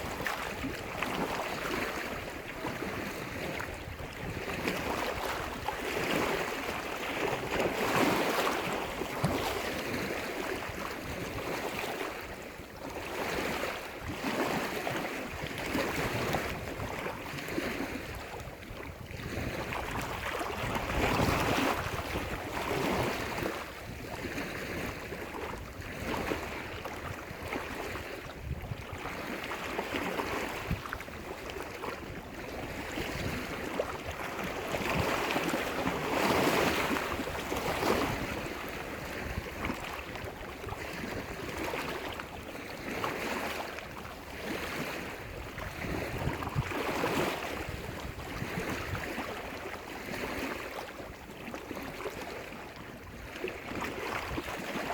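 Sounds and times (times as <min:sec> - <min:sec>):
waves breaking on shore: 0:00.0 - 0:54.9.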